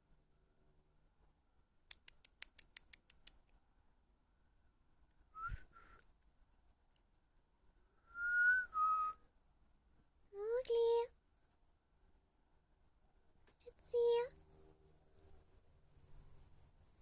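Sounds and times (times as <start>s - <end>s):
sharp clicks: 1.9s - 3.6s
person whistling for a cat: 5.4s - 6.0s, 8.0s - 9.2s.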